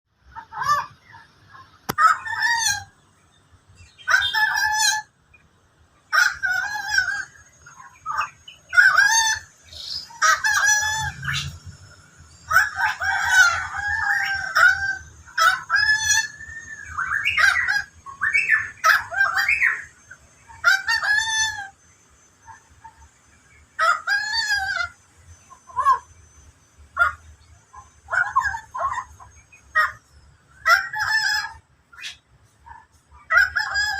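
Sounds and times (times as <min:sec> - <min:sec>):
bird giving harsh calls: 0:03.8 - 0:05.2, 0:06.0 - 0:21.8.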